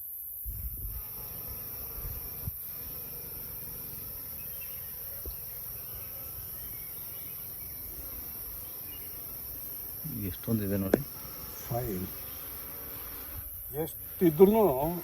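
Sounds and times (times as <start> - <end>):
bees buzzing: 0.9 - 15.0.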